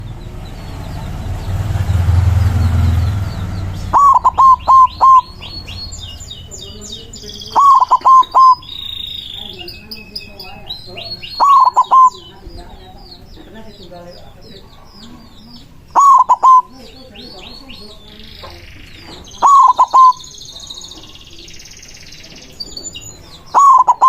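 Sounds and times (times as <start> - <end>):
low rumbling noise: 0.0 - 9.4
small birds chirping: 0.0 - 24.0
dove cooing: 2.9 - 21.5, 22.3 - 24.0.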